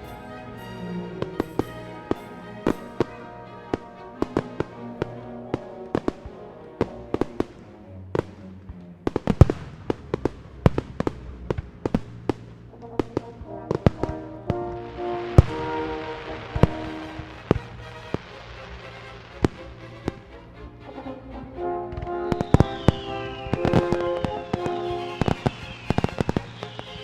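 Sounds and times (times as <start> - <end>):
music with sustained notes: 0.0 - 27.0
firework explosions: 9.1 - 20.3, 22.0 - 27.0.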